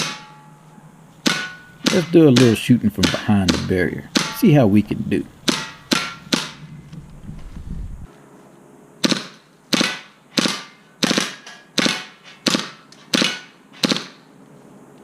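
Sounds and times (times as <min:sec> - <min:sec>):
airsoft pistol single shots: 0:09.0 - 0:14.2.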